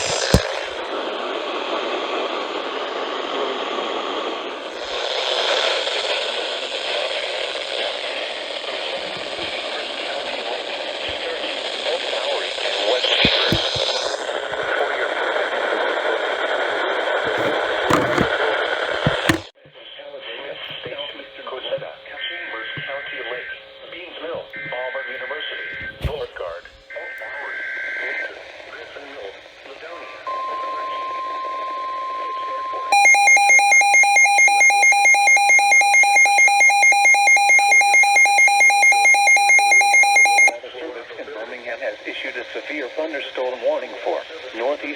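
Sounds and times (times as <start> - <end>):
radio static hiss: 0.0 - 19.4, 21.1 - 33.7, 40.4 - 44.9
steady warning alarm tone: 30.3 - 40.6.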